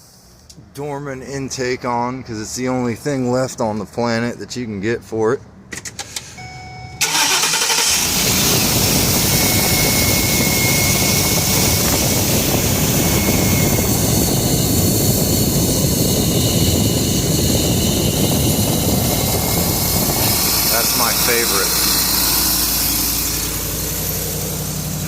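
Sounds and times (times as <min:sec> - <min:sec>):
engine idling: 0:07.0 - 0:25.0
loud rushing hiss: 0:18.0 - 0:25.0.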